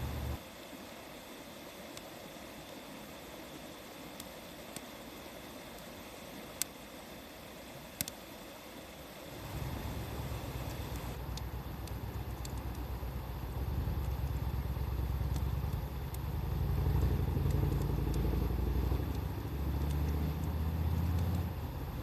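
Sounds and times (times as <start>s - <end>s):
low engine rumble: 0.0s - 0.4s, 9.4s - 22.0s
wood fire crackling: 0.0s - 0.4s, 1.6s - 22.0s.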